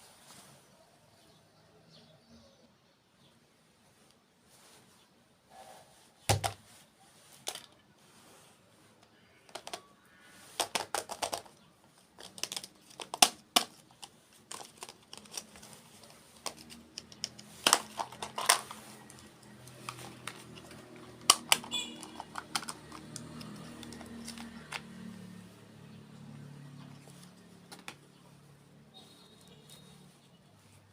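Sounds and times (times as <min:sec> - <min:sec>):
crunching and chewing: 0:12.2 - 0:25.0.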